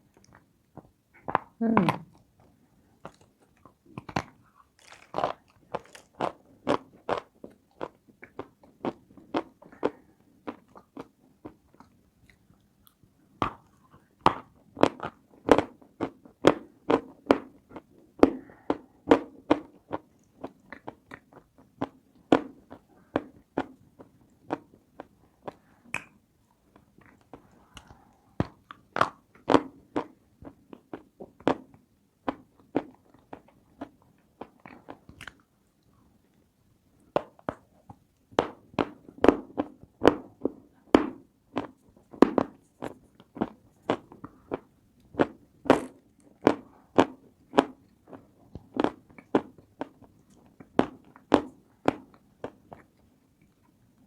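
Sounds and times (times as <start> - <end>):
chewing crunchy cookies: 0.0 - 54.0.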